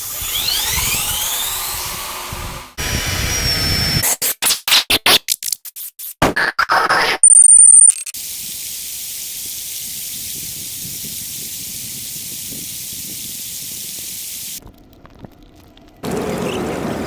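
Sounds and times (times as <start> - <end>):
steady hissing noise: 8.2 - 14.6
faint crackle: 14.6 - 16.0.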